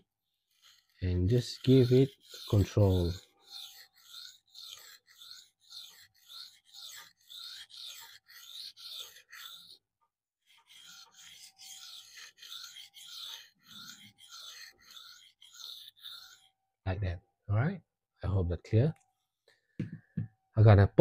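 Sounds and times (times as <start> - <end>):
knife rasping on sharpening stone: 0.0 - 16.6.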